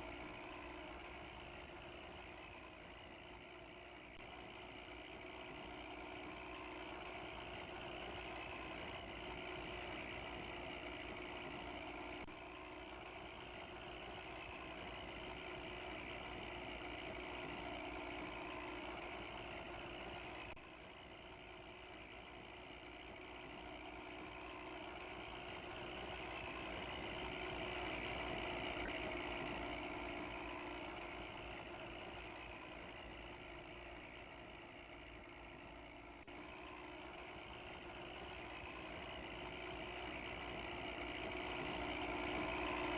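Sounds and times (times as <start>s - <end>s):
bus engine running roughly: 0.0s - 42.9s.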